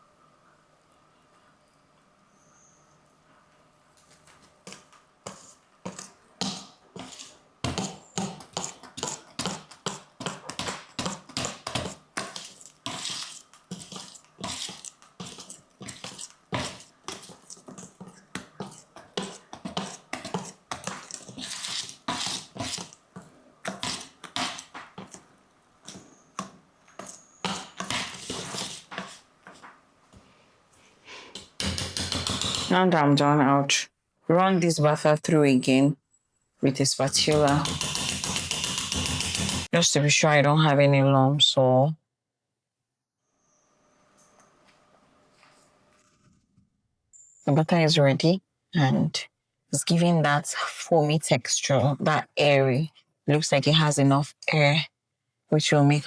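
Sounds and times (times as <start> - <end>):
whisk beating batter in bowl: 4.7 - 29.6, 37.1 - 39.7.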